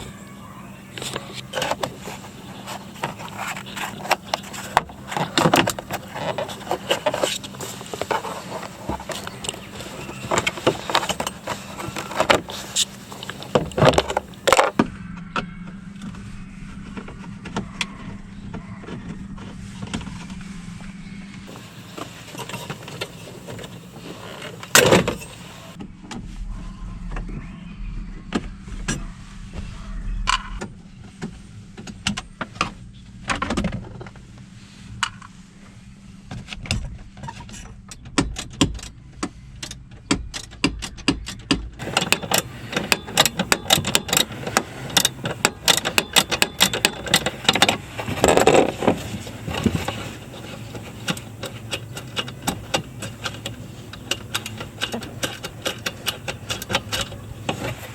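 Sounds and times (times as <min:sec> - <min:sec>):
steady low hum: 0:00.0 - 0:57.9.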